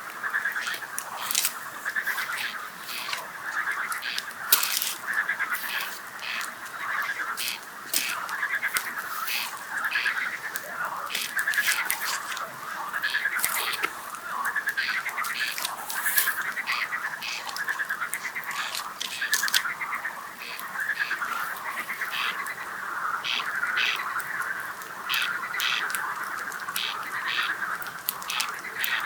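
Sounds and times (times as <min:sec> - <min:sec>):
campfire popping and crackling: 0:00.0 - 0:29.0
frogs croaking in chorus: 0:00.0 - 0:29.0.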